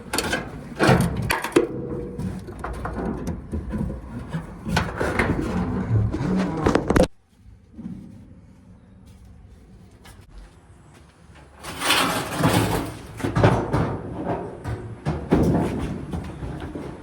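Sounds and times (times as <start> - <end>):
sheet metal scraping and sliding: 0.0 - 7.1, 11.4 - 17.0.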